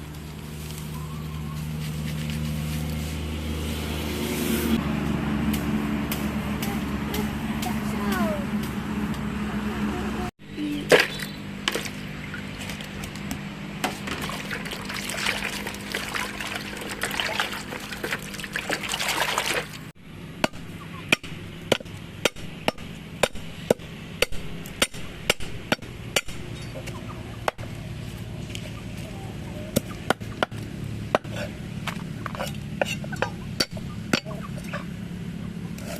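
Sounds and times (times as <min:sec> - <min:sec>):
water splashing and trickling: 0:10.7 - 0:13.1, 0:14.0 - 0:20.0.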